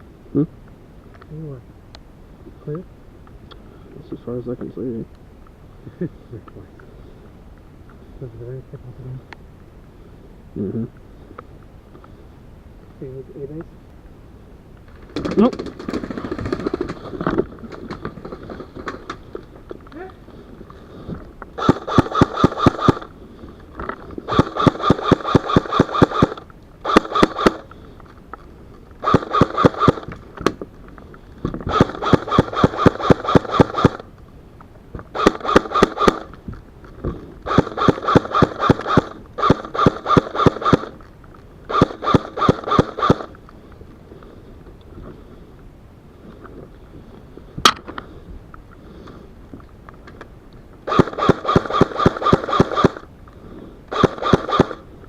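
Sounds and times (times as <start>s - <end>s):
airsoft gun firing full auto: 21.6s - 23.1s, 24.3s - 27.7s, 29.0s - 30.1s, 31.7s - 34.1s, 35.1s - 36.4s, 37.4s - 41.0s, 41.7s - 43.4s, 50.8s - 53.1s, 53.9s - 54.9s.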